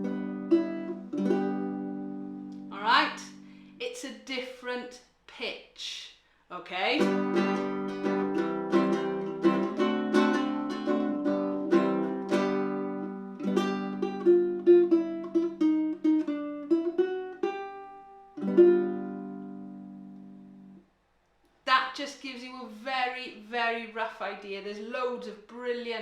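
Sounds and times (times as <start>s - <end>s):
ukulele playing: 0.0s - 3.7s, 7.0s - 20.8s.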